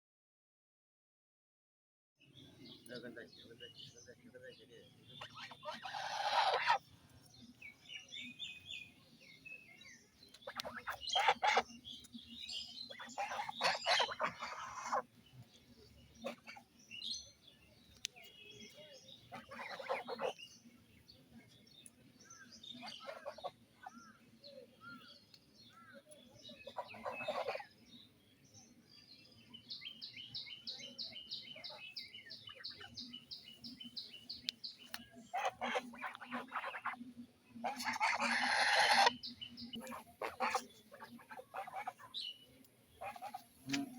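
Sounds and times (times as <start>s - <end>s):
small bird chirping: 4.8s - 20.7s, 21.4s - 43.9s
geese calling: 5.2s - 6.9s, 10.4s - 11.8s, 12.7s - 15.1s, 16.2s - 16.7s, 19.3s - 20.4s, 22.7s - 24.0s, 26.6s - 27.7s, 34.9s - 42.2s, 43.0s - 43.9s.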